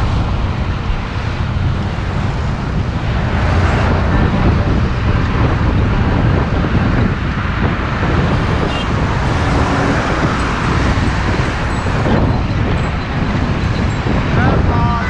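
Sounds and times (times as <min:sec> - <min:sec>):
bus engine and road rumble: 0:00.0 - 0:15.0
wind noise: 0:00.0 - 0:15.0.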